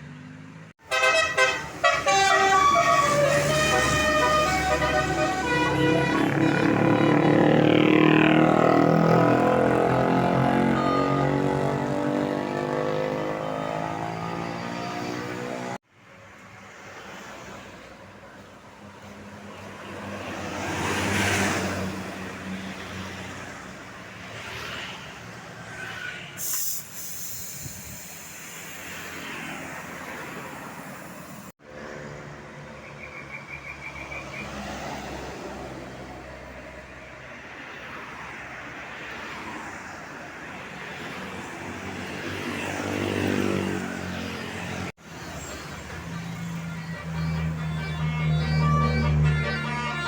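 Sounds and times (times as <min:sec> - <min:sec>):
large vehicles driving past: 0:00.2 - 0:15.8, 0:34.0 - 0:50.0
short hiss: 0:26.4 - 0:29.1
vehicle engine note: 0:45.5 - 0:50.0.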